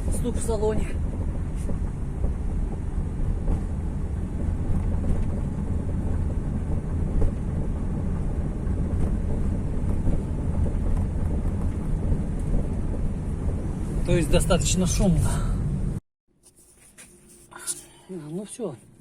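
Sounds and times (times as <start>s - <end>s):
road rumble inside car: 0.0s - 16.0s.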